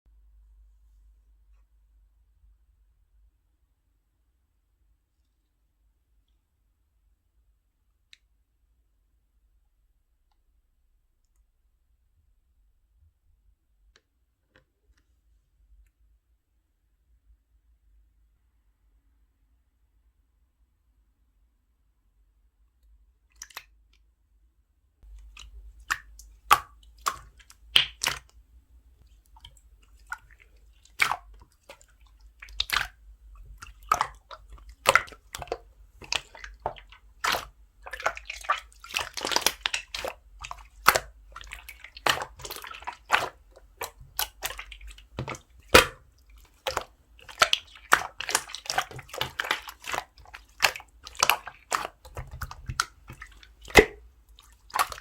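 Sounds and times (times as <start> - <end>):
slime squished by hand: 25.1 - 28.4, 29.0 - 55.0.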